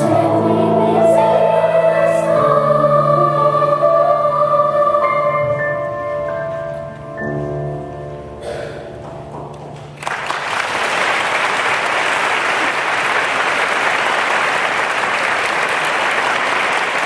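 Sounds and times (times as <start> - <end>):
audience applauding: 10.0 - 17.0.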